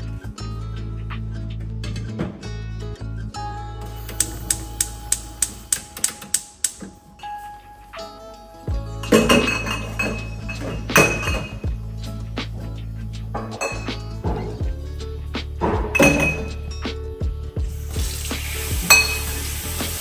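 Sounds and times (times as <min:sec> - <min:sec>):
soft background music: 0:00.0 - 0:20.0
dishes clattering: 0:09.0 - 0:11.7, 0:13.4 - 0:14.7, 0:15.6 - 0:16.7, 0:18.9 - 0:19.3.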